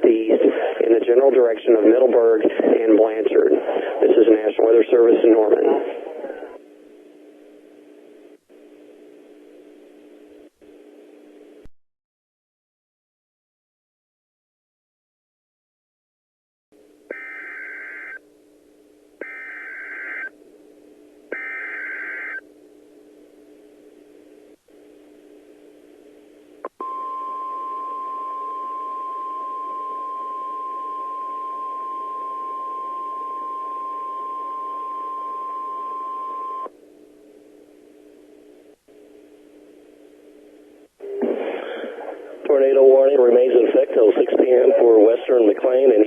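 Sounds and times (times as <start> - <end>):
low radio hum: 0.0 - 11.7, 16.8 - 46.0
steady alarm tone: 17.1 - 18.2, 19.2 - 20.3, 21.3 - 22.4, 26.8 - 36.7.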